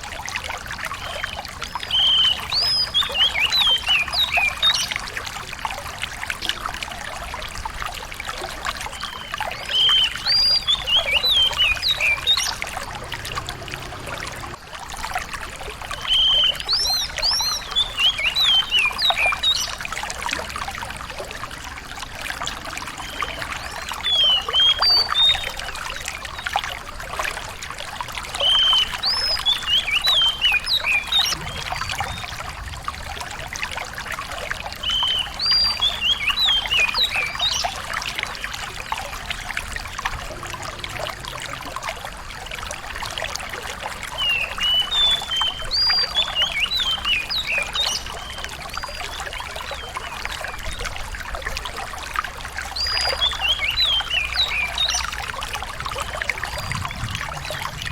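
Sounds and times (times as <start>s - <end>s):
trickle of running water: 0.0s - 57.9s
songbird chirping and whistling: 9.0s - 14.5s.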